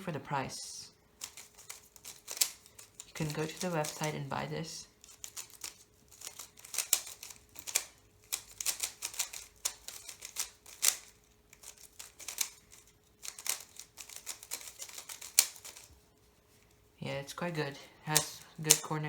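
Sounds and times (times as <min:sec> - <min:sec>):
speed cube clicking: 0:01.2 - 0:04.2, 0:05.0 - 0:15.9, 0:18.1 - 0:18.9.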